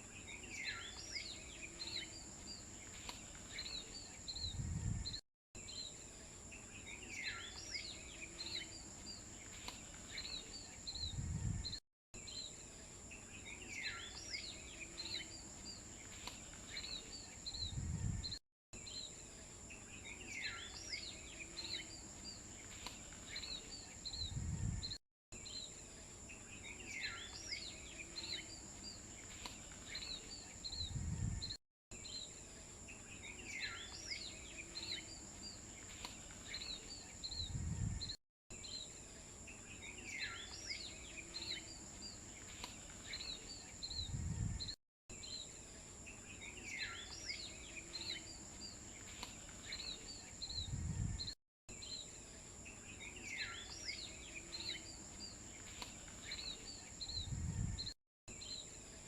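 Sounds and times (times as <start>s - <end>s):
birds chirping: 0.0s - 58.7s.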